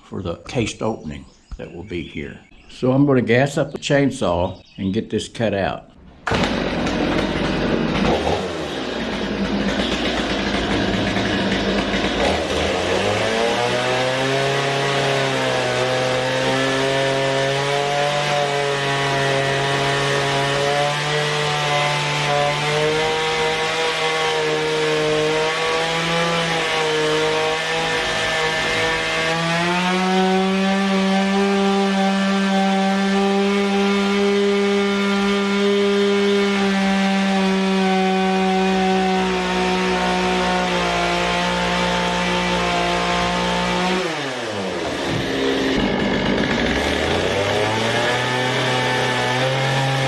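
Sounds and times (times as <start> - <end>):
chainsaw cutting logs: 6.0 - 50.0.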